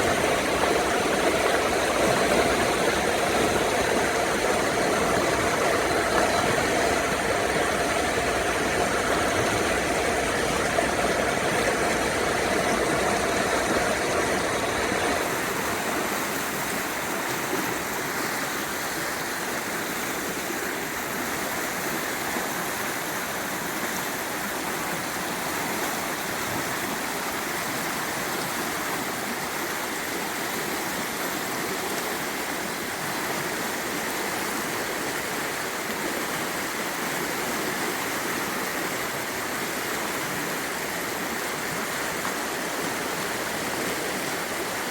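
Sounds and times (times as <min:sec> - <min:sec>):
motor hum: 0:00.0 - 0:15.6
river water rushing: 0:00.0 - 0:44.9.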